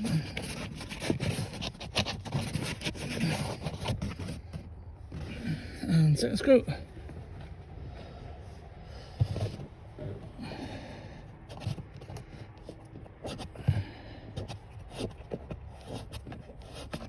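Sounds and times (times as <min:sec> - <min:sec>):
plastic trim scraping and rustling: 0:00.0 - 0:05.7, 0:10.6 - 0:17.0.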